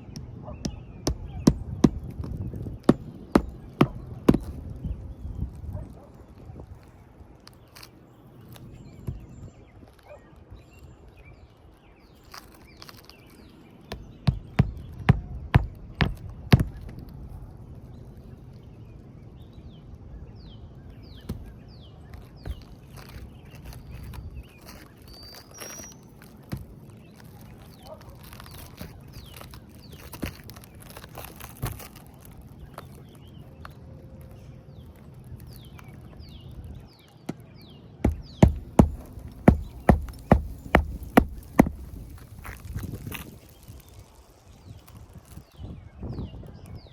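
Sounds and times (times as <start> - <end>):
hammer blows on roof shingles: 0.1 - 4.7, 13.9 - 17.1, 37.3 - 43.1
falling bird chirps: 20.5 - 45.8.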